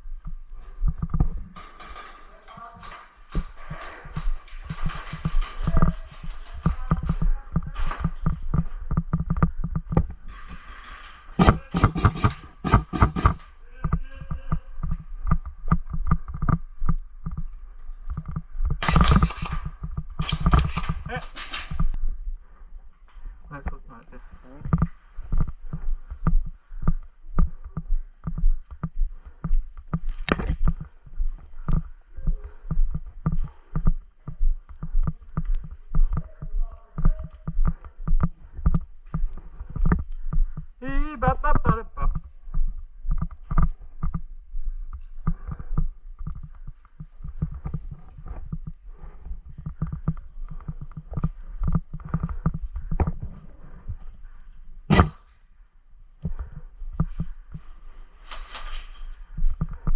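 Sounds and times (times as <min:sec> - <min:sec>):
footsteps: 0:00.0 - 0:55.4, 0:56.2 - 0:59.9
kit rustling: 0:56.4 - 0:59.9.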